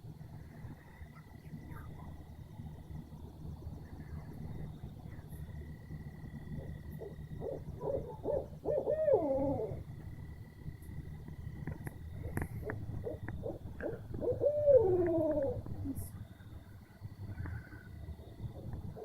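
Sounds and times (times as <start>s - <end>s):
owl hooting: 6.5s - 10.0s, 12.2s - 16.1s.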